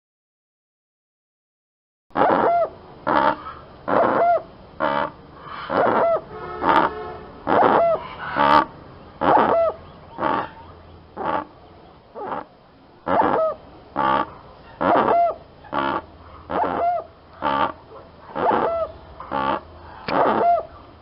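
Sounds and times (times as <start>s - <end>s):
bird calling: 2.1s - 21.0s.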